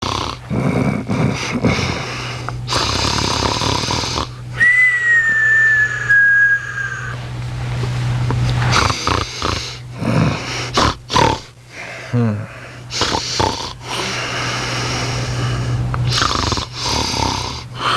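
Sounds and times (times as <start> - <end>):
dog snoring: 0.0 - 4.4, 8.6 - 11.6, 12.2 - 17.9
high whistling wheeze: 4.6 - 7.2.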